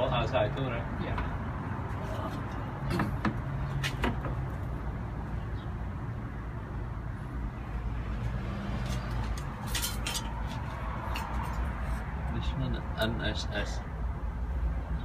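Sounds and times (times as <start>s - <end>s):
metal clanks: 9.3s - 11.5s.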